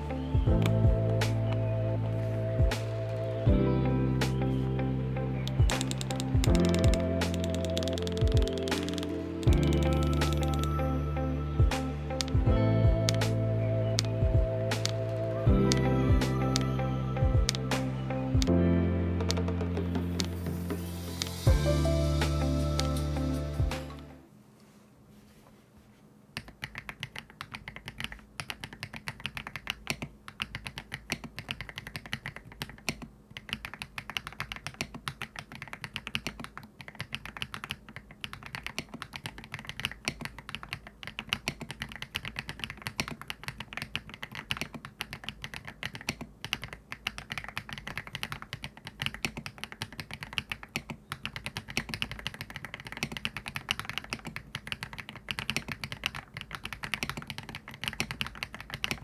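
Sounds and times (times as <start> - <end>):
mechanical keyboard typing: 5.4 - 10.9, 11.7 - 13.3, 26.4 - 59.0.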